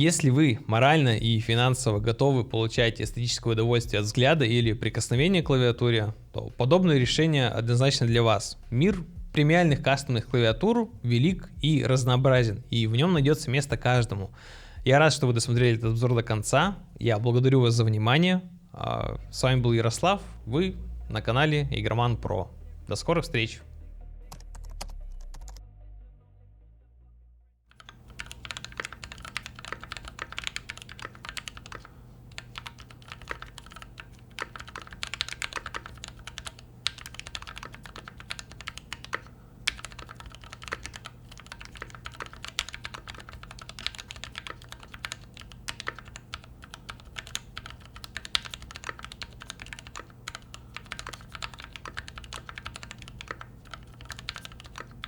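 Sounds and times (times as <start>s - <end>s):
fast mechanical keyboard typing: 27.7s - 55.0s.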